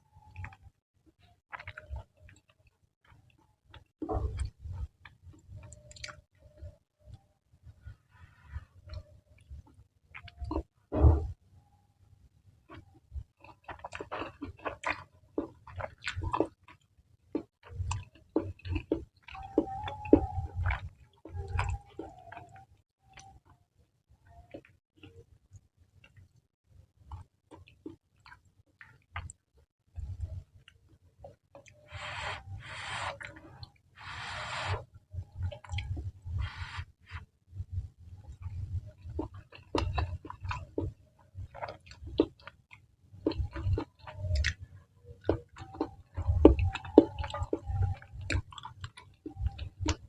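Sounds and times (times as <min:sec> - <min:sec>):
chewing noodles: 0:00.2 - 0:06.4, 0:12.7 - 0:23.6, 0:27.1 - 0:29.4, 0:38.2 - 0:50.0
mouth clicks and smacks: 0:05.4 - 0:06.3, 0:39.0 - 0:44.6, 0:45.2 - 0:50.0.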